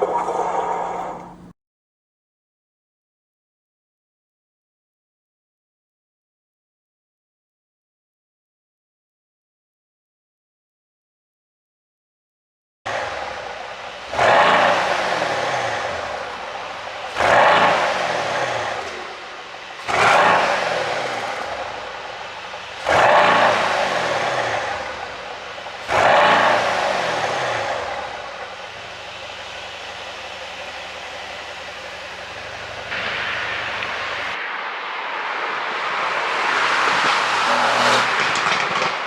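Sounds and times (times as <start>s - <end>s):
car engine revving: 0.0s - 1.5s, 12.9s - 39.0s
exhaust pops and crackles: 12.9s - 34.7s, 36.6s - 39.0s.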